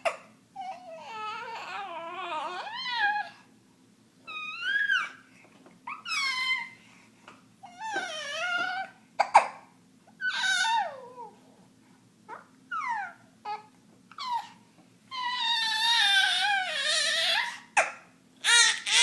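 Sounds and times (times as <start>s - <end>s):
baby crying: 0.6s - 3.4s, 12.3s - 17.8s, 18.4s - 19.0s.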